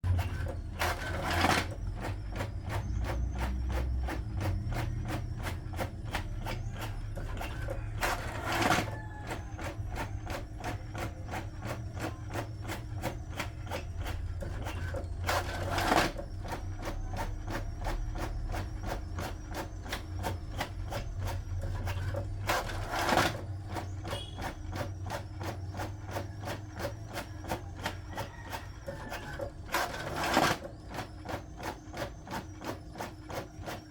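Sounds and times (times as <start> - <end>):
printer hum: 0.0 - 33.9
printer ticking: 0.0 - 33.9.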